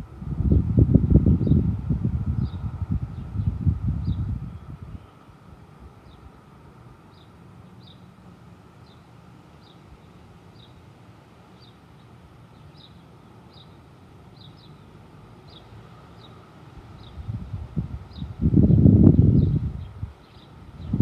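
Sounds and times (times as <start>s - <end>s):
low rumble of wind: 0.0s - 21.0s
small bird chirping: 11.5s - 16.4s, 18.1s - 21.0s.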